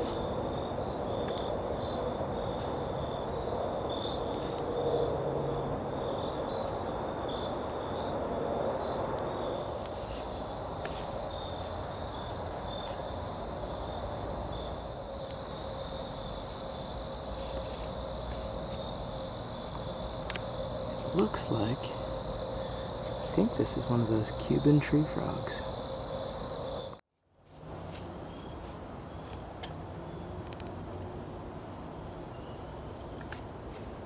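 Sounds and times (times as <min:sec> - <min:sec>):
high-pitched insect trill: 0:00.0 - 0:27.0.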